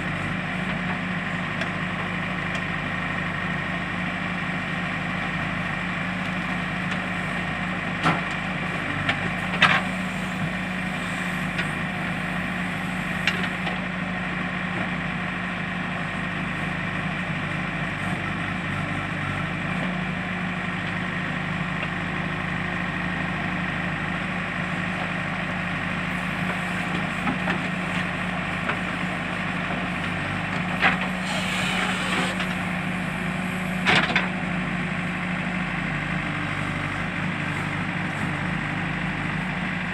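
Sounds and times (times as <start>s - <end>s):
diesel engine running: 0.0s - 39.9s
clattering scraping noises: 30.8s - 32.6s.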